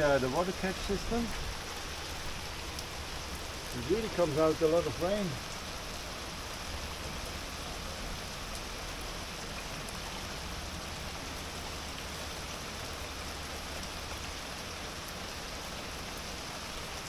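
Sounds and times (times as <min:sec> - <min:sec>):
heavy rain on a boat: 0:00.0 - 0:17.0.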